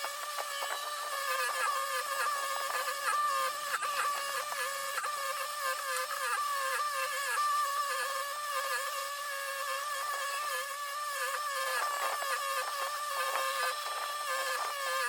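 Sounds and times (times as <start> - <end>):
small motor whining: 0.0 - 15.0.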